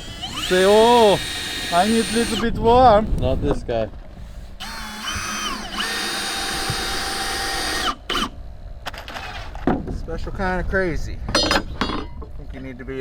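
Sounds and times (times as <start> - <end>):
power drill whining: 0.0 - 2.6, 4.6 - 9.6.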